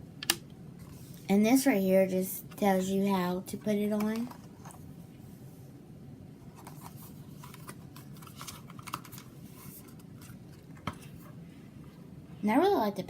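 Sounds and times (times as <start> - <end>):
paper and cardboard rustling: 3.9 - 4.8, 6.5 - 11.3.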